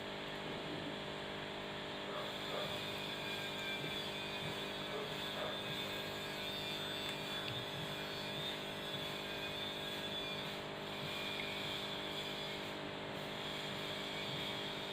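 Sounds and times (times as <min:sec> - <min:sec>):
steady machine hum: 0:00.0 - 0:14.9.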